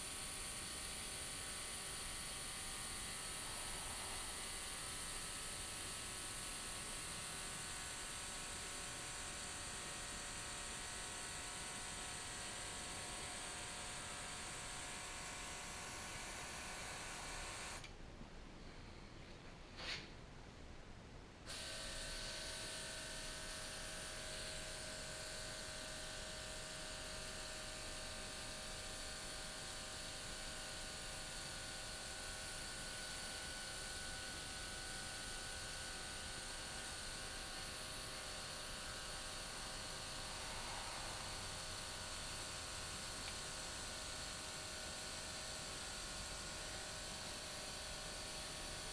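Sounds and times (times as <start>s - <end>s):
air compressor humming: 31.1s - 48.9s.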